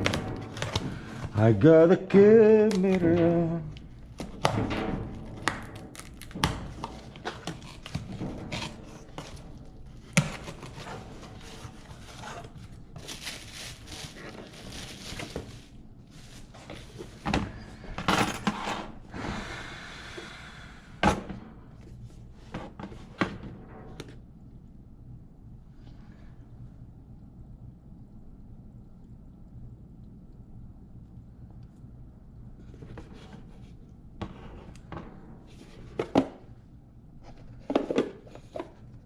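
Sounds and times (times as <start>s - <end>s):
packaging rustling: 10.0s - 17.2s.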